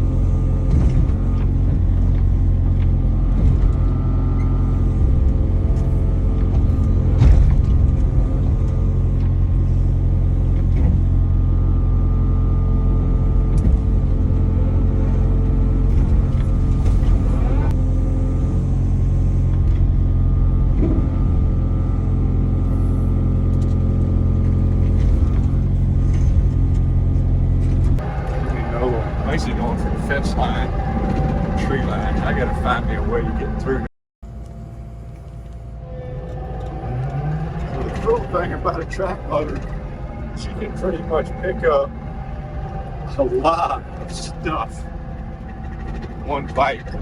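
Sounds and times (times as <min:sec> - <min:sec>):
diesel engine running: 0:00.0 - 0:47.0
knocks and clanks: 0:00.2 - 0:11.2.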